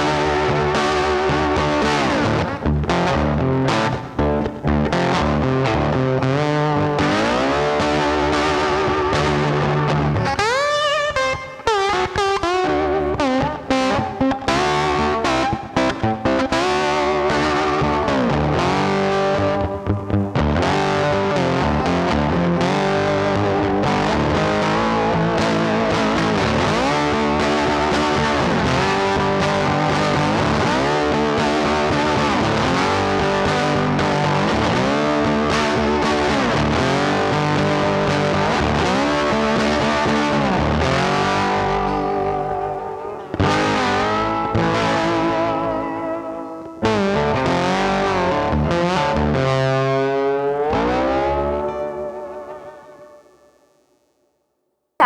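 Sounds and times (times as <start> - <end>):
distorted electric guitar melody: 0.0 - 54.1
steady musical accompaniment: 38.8 - 49.5.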